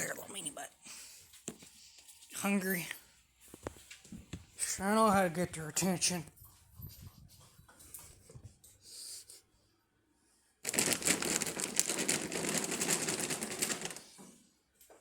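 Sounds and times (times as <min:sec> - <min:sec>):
treat bag rattling and crinkling: 0:10.6 - 0:14.2.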